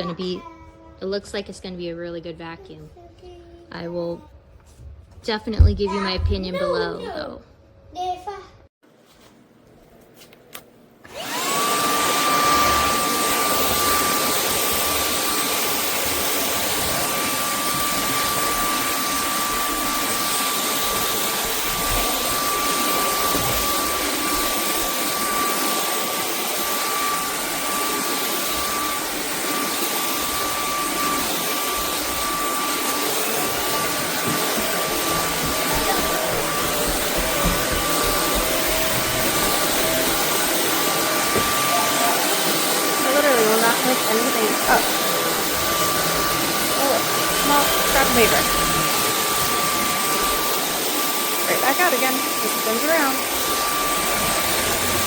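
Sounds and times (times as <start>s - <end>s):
vacuum motor whining: 11.0s - 55.0s.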